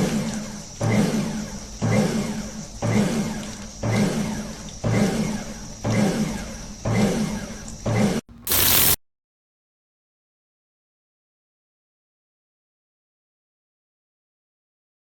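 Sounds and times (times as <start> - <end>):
pressure washer motor surging: 8.3 - 9.0.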